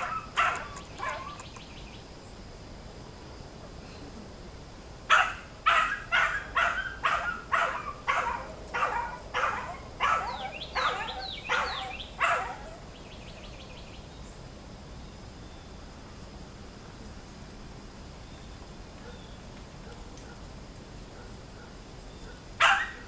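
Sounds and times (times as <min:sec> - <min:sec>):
dog barking: 0:00.0 - 0:01.4, 0:05.1 - 0:12.8, 0:21.2 - 0:23.0.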